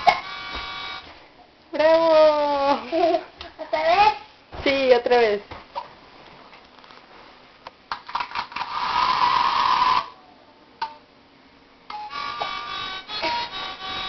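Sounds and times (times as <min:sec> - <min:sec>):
toy playing electronic tune: 0:11.9 - 0:14.0.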